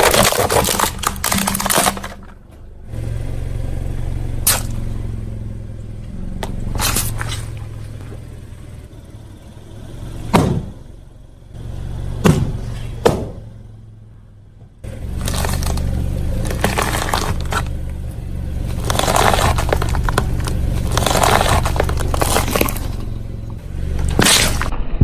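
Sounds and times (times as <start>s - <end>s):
sharp cracks: 0.0s - 2.5s, 4.4s - 4.9s, 15.1s - 18.0s, 18.7s - 25.0s
tyres crushing brittle objects: 0.0s - 2.6s, 4.4s - 4.8s, 6.5s - 7.6s, 14.9s - 24.7s
car engine humming: 0.0s - 25.0s.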